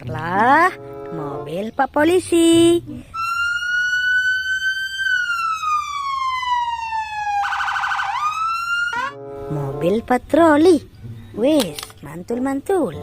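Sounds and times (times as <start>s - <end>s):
police car siren wailing: 3.2s - 9.9s.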